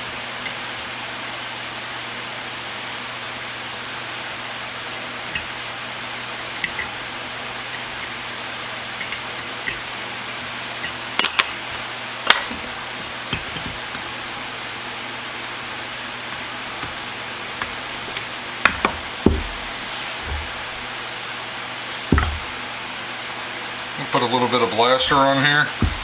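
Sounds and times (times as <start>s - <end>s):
metal parts and tools clinking: 0.0s - 0.9s, 5.3s - 7.0s, 7.7s - 8.2s, 8.9s - 10.0s, 10.6s - 14.4s
steady hiss: 3.6s - 26.0s.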